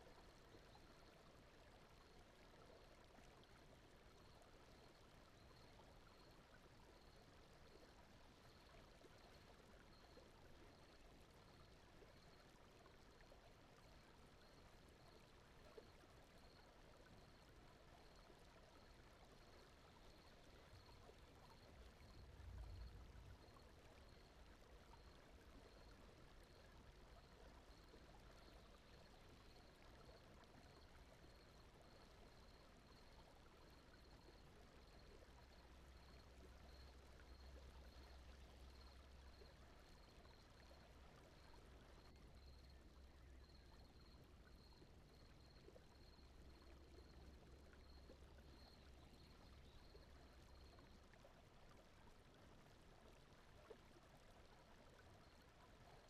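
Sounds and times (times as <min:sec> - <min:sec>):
faint brown noise: 0:00.0 - 0:56.0.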